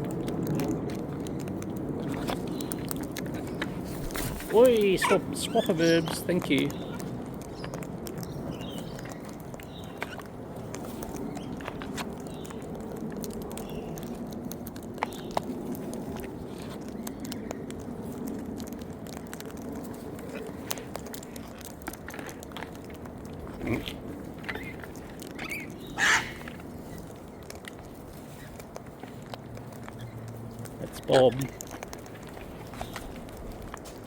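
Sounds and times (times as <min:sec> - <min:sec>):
birds pecking and crunching seed: 0:00.0 - 0:34.0
loud bird squawk: 0:25.4 - 0:26.5.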